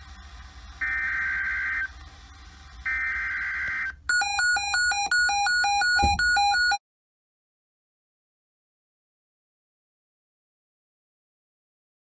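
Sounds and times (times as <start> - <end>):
rapid electronic alert beeping: 0.8 - 1.9, 2.9 - 6.8.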